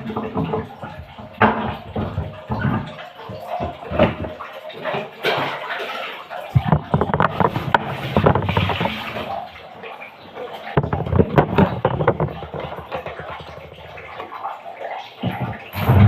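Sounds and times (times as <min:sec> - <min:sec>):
knocks and clatter: 0:00.0 - 0:05.7, 0:06.5 - 0:09.6, 0:10.6 - 0:14.6, 0:15.2 - 0:16.0
water splashing and sloshing: 0:00.0 - 0:16.0.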